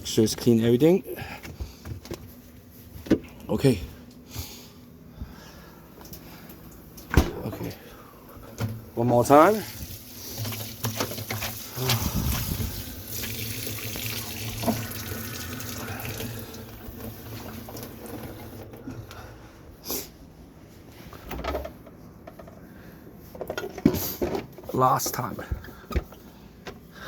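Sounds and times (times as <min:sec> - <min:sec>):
towel being rinsed: 0:09.2 - 0:18.7
water running from a tap: 0:09.5 - 0:18.6.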